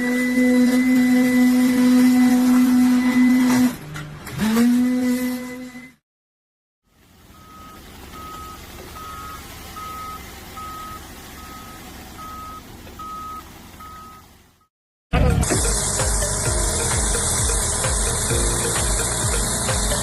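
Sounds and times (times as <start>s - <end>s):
reversing alarm beeping: 7.3s - 14.7s
machinery noise: 15.2s - 20.0s.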